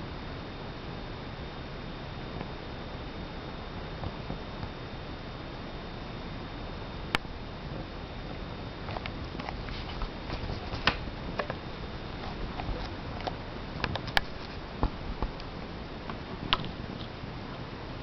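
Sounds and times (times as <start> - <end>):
static hiss: 0.0 - 18.0.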